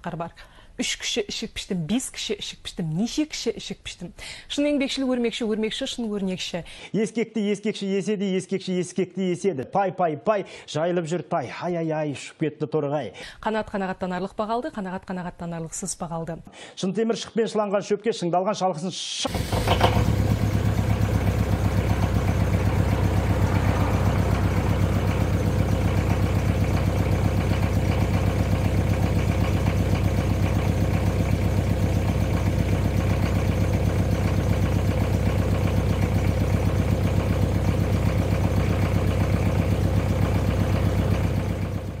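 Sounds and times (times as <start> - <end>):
diesel engine running: 19.3 - 42.0.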